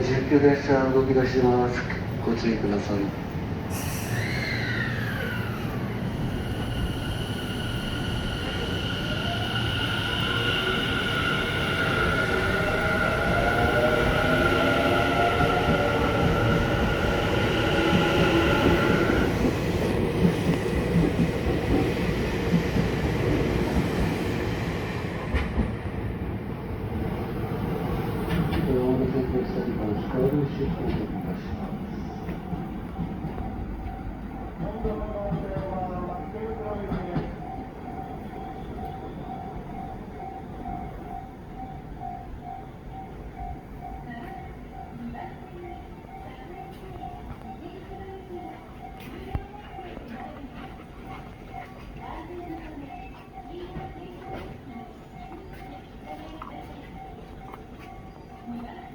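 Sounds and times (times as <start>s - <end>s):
electric train whine: 0.0s - 52.6s
train wheels rumbling: 0.0s - 58.9s
level crossing warning bell: 31.4s - 58.9s.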